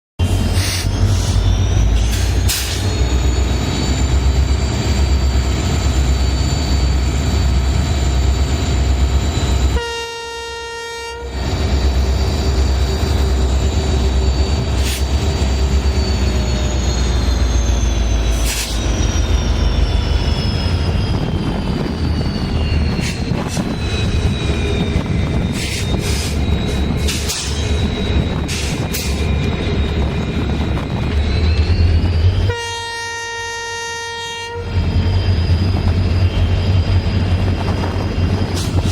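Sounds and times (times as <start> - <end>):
deep locomotive engine rumble: 0.2 - 38.9
train horn blast: 9.6 - 11.4, 32.4 - 34.8.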